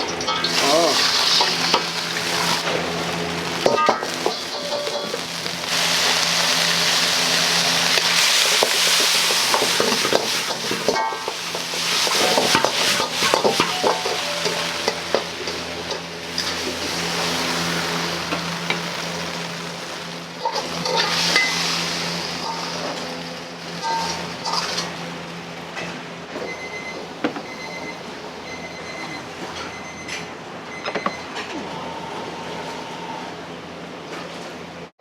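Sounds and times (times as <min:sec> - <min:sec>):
food sizzling in hot oil: 0:00.1 - 0:25.3
metal spatula clanking on wok: 0:09.2 - 0:16.5.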